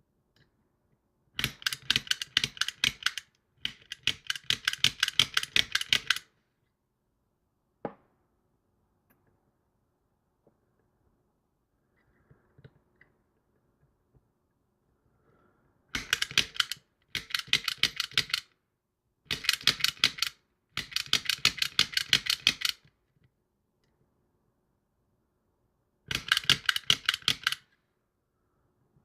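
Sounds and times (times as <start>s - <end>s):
rapid sharp clicking: 1.4s - 6.3s, 26.1s - 27.6s.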